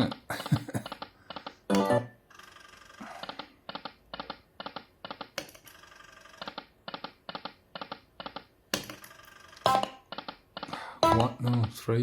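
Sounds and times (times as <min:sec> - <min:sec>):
slot machine reel stop tones: 0:09.7 - 0:09.9.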